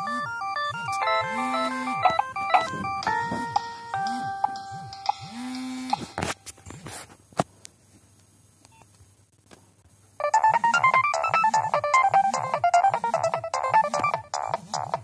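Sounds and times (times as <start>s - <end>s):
electronic ringtone melody: 0.0s - 6.1s, 10.2s - 15.0s.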